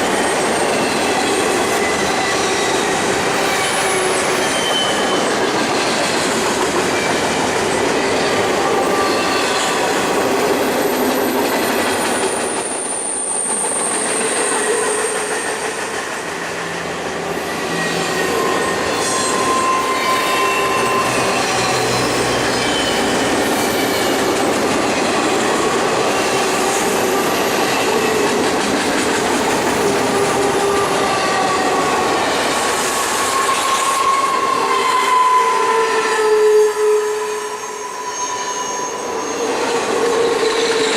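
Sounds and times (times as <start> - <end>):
freight train rumble: 0.0 - 35.4
wheels squealing on rails: 0.0 - 40.9
clickety-clack over rail joints: 0.6 - 17.2, 20.8 - 34.1.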